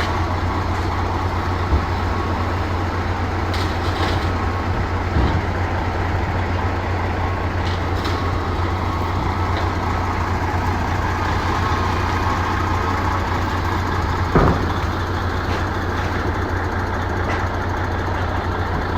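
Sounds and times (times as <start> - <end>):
heavy machinery engine running: 0.0 - 18.9.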